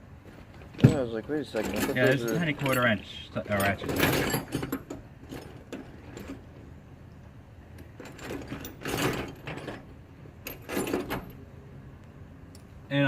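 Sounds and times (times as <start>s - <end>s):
metal tools clinking: 0.8s - 6.5s.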